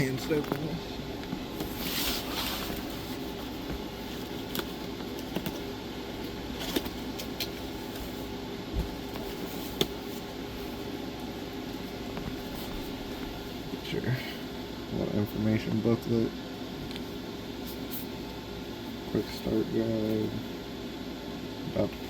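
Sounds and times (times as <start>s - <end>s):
steady low hum: 0.0s - 22.0s
cardboard box rustling and scraping: 1.5s - 5.7s.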